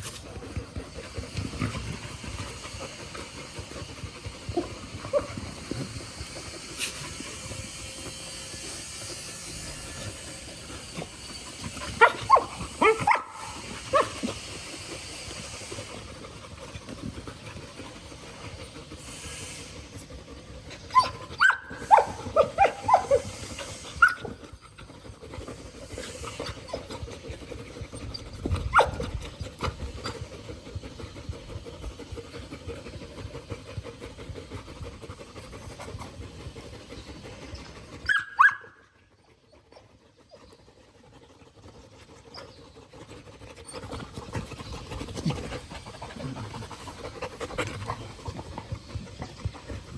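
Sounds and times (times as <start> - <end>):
dog giving high-pitched cries: 11.0 - 14.4, 20.7 - 24.4, 38.0 - 38.8.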